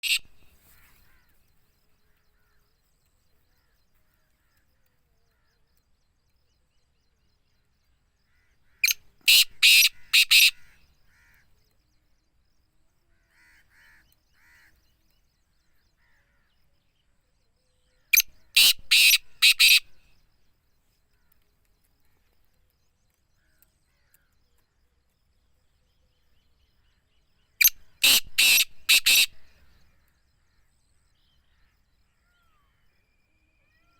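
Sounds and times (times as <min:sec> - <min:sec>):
francolin calling: 0:00.0 - 0:01.3, 0:08.3 - 0:11.4, 0:18.1 - 0:20.0, 0:27.6 - 0:31.8.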